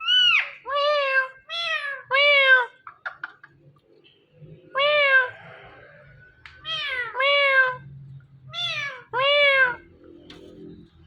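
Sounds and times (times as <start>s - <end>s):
parrot imitating cat meow: 0.0s - 2.9s, 6.6s - 7.8s, 8.5s - 9.9s.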